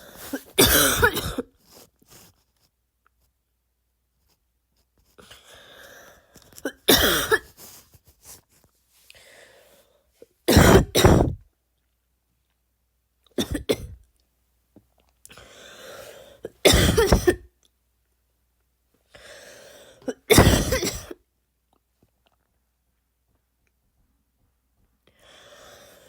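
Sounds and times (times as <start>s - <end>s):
noisy breath in: 0.0s - 0.6s, 5.2s - 6.5s, 7.5s - 8.4s, 9.1s - 10.2s, 15.4s - 16.4s, 19.1s - 20.0s, 25.1s - 26.0s
person barking cough: 0.2s - 1.5s, 6.6s - 7.6s, 10.5s - 11.4s, 13.4s - 14.0s, 16.6s - 17.4s, 20.1s - 21.2s.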